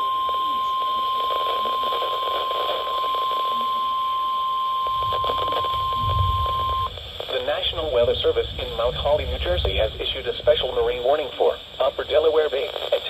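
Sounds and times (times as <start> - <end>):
steady high alarm tone: 0.0 - 7.0
radio hiss: 0.0 - 13.0
low rumble: 5.8 - 11.1.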